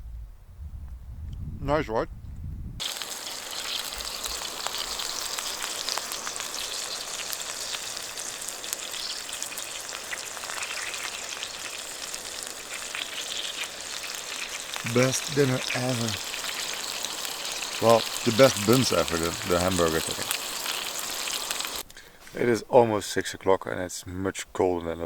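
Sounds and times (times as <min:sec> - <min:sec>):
patty sizzling in a pan: 0:02.8 - 0:21.9.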